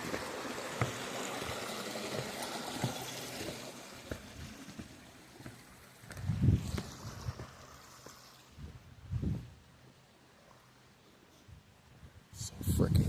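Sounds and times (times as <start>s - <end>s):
creek water running: 0.0s - 8.7s.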